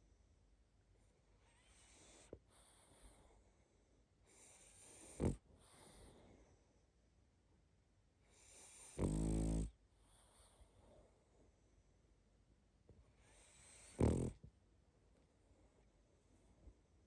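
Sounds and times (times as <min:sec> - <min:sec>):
dog snoring: 0:01.4 - 0:03.3, 0:04.3 - 0:06.2, 0:08.3 - 0:10.6, 0:13.2 - 0:14.5.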